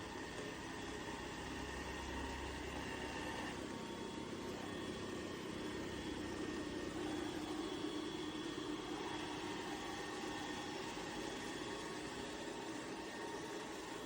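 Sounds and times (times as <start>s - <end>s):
faint high whines: 0.0s - 14.0s
robot vacuum motor hum: 0.0s - 14.0s.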